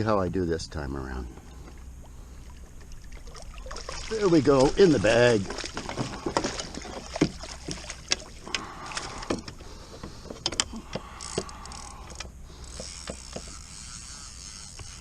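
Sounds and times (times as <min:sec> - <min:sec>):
low steady hum: 0:00.0 - 0:15.0
knocks and clatters in a boat: 0:02.4 - 0:13.9.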